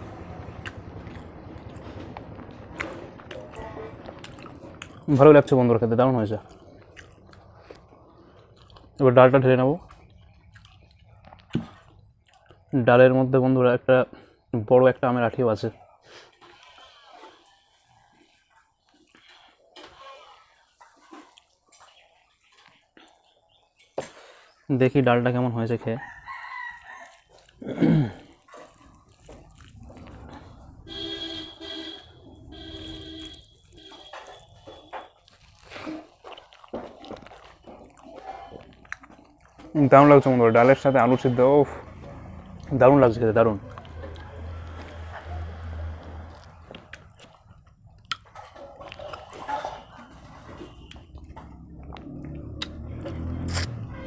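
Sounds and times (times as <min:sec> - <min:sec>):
chewing food: 0:00.4 - 0:12.7, 0:16.2 - 0:24.4, 0:26.0 - 0:40.8, 0:41.6 - 0:53.8
rooster crowing: 0:26.0 - 0:27.2
wet squelching and dripping: 0:26.8 - 0:31.0.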